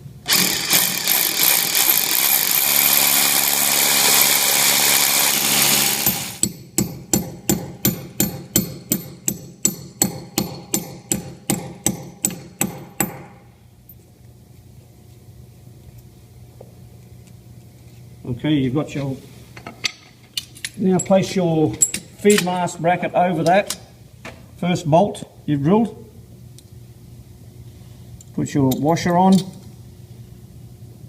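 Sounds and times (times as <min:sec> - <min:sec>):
power drill boring into masonry: 0:00.2 - 0:06.5
hammer striking anchor bolt: 0:06.4 - 0:13.4.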